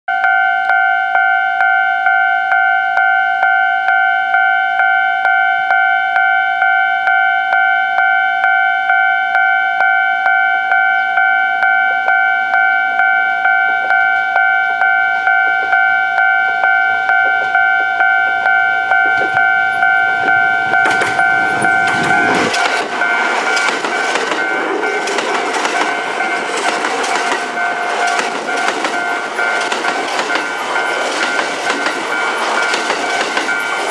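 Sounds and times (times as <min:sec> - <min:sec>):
level crossing bell ringing: 0:00.1 - 0:33.9
train passing with wheel clatter: 0:18.9 - 0:33.9.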